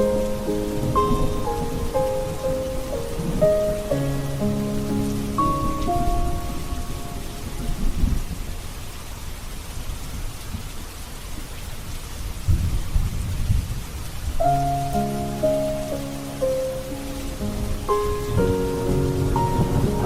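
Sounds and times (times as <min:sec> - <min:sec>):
soft music chords: 0:00.0 - 0:08.2, 0:14.4 - 0:20.0
thunder rolling: 0:00.0 - 0:08.6, 0:17.4 - 0:20.0
steady rain: 0:00.0 - 0:20.0.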